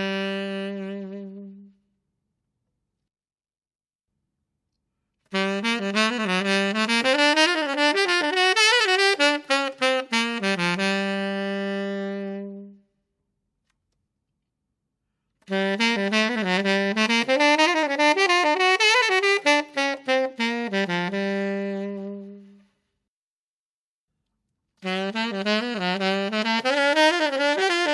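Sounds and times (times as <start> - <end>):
saxophone jazz lick: 0.0 - 1.8, 5.3 - 12.8, 15.4 - 22.8, 24.8 - 27.9.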